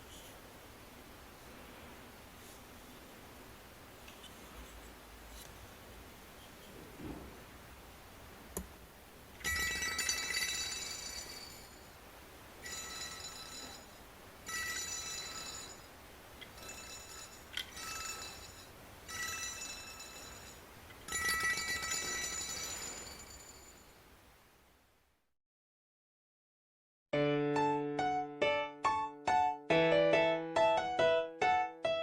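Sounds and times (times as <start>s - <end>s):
wooden door chime ringing: 9.4s - 11.8s, 12.6s - 15.9s, 16.5s - 23.8s.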